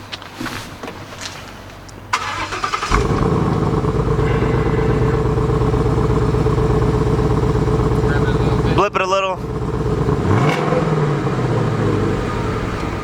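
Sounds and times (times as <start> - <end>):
car engine starting and idling: 2.0 - 13.0.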